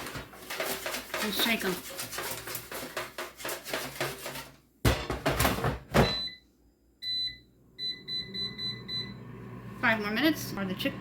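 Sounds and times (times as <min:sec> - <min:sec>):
fries rattling in a basket: 0:00.0 - 0:04.6
air fryer electronic beep: 0:06.0 - 0:09.7.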